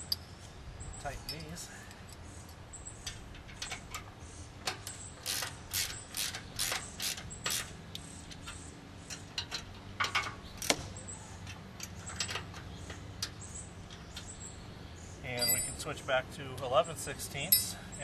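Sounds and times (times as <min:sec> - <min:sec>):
ratchet wrench clicking: 0:04.8 - 0:07.7.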